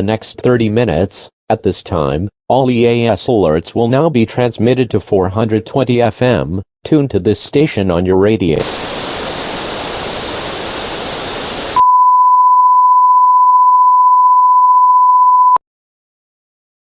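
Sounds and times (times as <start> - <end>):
static hiss: 8.6 - 11.8
steady beep tone: 8.6 - 11.8.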